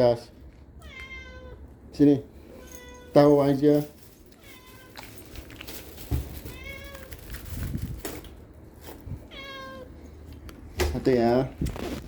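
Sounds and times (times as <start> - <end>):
cat meowing: 0.8 - 1.7, 4.3 - 5.2, 6.3 - 7.3, 9.3 - 10.0.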